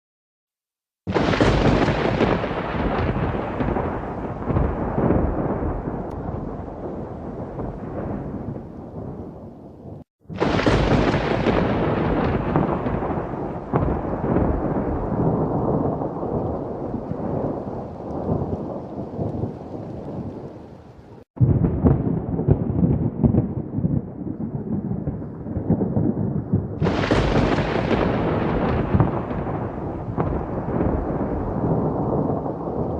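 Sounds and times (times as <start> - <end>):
sharp thunder clap: 1.1 - 20.5, 21.4 - 32.9
thunder rumbling: 1.1 - 32.9.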